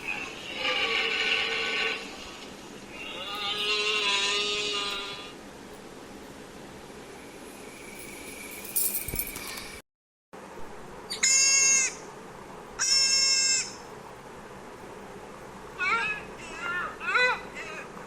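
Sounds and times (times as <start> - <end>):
deer bleating: 0.1 - 2.1, 3.0 - 5.4
background hiss: 6.2 - 9.8.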